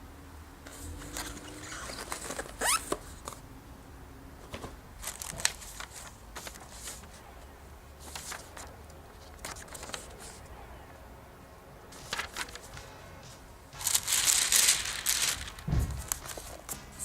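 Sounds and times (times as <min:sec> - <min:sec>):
packaging rustling and clicking: 0:00.7 - 0:03.4, 0:04.5 - 0:07.2, 0:08.0 - 0:10.4, 0:13.8 - 0:17.0
packaging scraping or ripping: 0:00.7 - 0:03.4, 0:05.0 - 0:07.0, 0:13.8 - 0:16.8.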